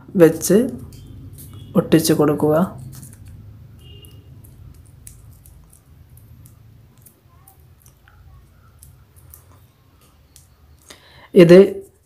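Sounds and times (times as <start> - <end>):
low steady hum: 0.0 - 12.0
paper tape clicks and crinkles: 2.7 - 11.0.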